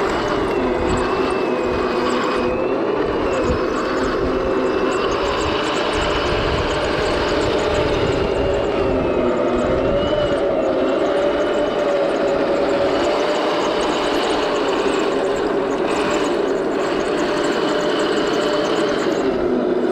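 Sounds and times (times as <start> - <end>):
rough grinding rattle: 0.0 - 8.8, 9.4 - 19.9
toy tank motors whining: 0.0 - 19.9.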